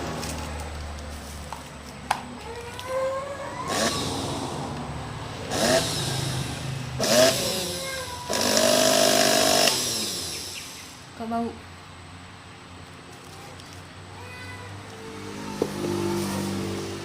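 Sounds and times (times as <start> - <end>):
blender motor spinning: 3.4 - 11.0.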